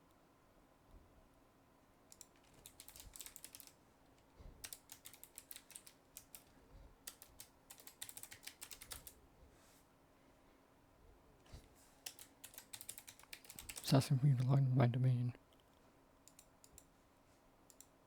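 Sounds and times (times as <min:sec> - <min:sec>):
keyboard typing: 0:02.1 - 0:03.8, 0:04.6 - 0:09.2, 0:12.0 - 0:14.0.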